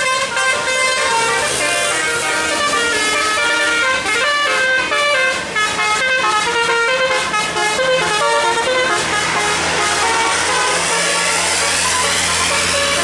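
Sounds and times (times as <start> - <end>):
musical air horn tune: 0.0 - 13.0.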